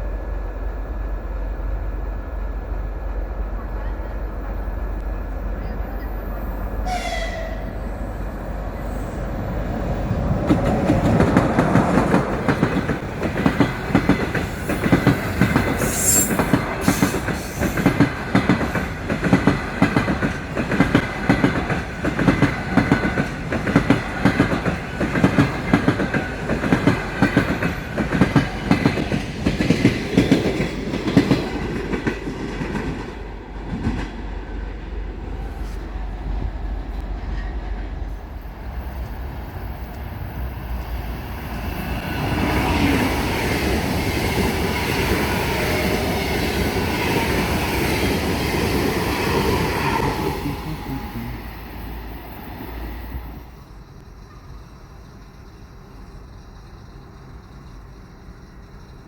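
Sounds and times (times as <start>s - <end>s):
train wheels clattering: 10.2s - 34.4s.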